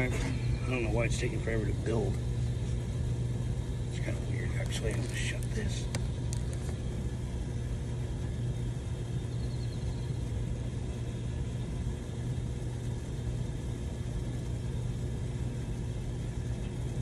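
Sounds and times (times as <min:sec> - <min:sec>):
water pump humming: 0:00.0 - 0:17.0.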